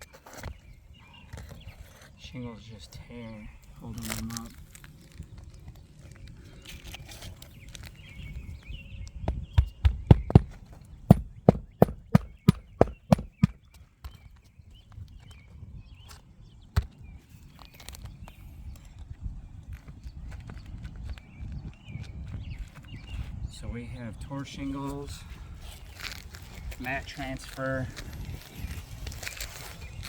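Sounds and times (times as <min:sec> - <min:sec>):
knocks on shingle roof: 0:09.3 - 0:13.6.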